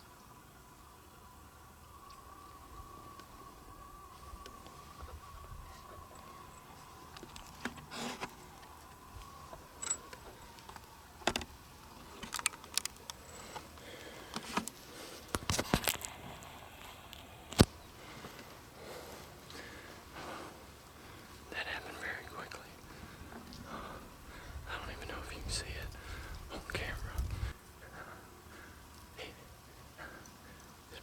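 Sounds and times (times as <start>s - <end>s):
clicks and rustles of gear: 7.1s - 16.2s.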